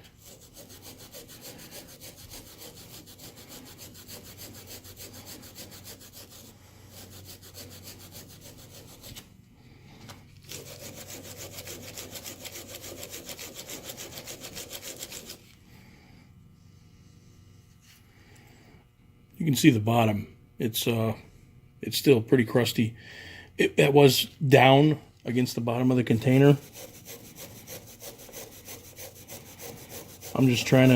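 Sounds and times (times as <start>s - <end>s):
wire brush scrubbing rusty steel: 0.0s - 9.2s, 10.5s - 15.4s, 25.9s - 30.9s.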